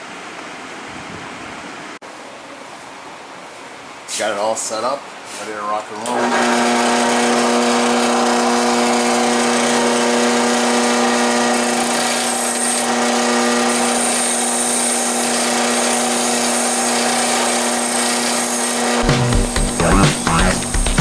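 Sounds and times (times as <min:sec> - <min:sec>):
drill with wire brush whine: 0:06.1 - 0:19.0.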